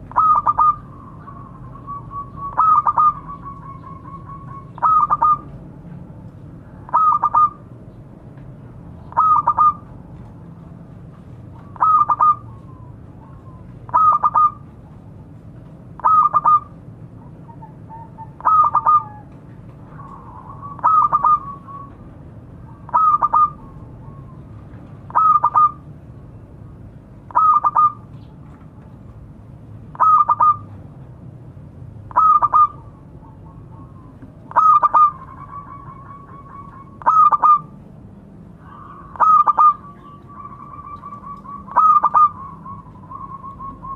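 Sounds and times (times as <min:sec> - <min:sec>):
dove cooing: 0:00.0 - 0:05.6, 0:06.9 - 0:07.6, 0:09.1 - 0:09.9, 0:11.5 - 0:14.6, 0:16.0 - 0:16.7, 0:17.4 - 0:22.0, 0:22.7 - 0:25.8, 0:27.3 - 0:28.0, 0:29.9 - 0:30.7, 0:32.1 - 0:37.7, 0:38.6 - 0:43.9.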